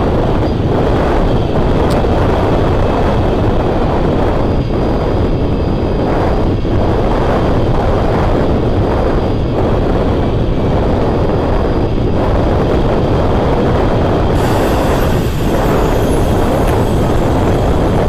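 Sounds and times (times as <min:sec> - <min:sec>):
gusty wind buffeting microphone: 0:00.0 - 0:18.0
bright hiss: 0:14.3 - 0:18.0.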